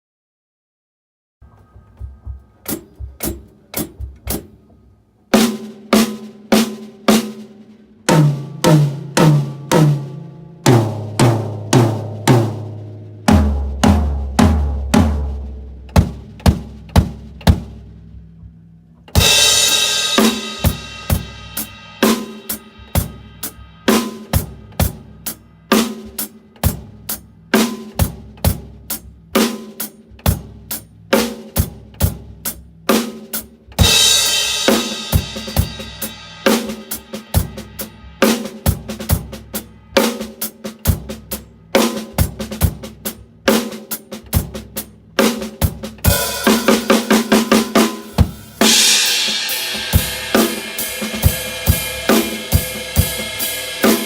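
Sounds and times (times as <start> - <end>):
drum kit beat: 1.5 - 54.0
tom drum fill: 8.1 - 17.8, 44.3 - 54.0
crash cymbal: 48.2 - 54.0.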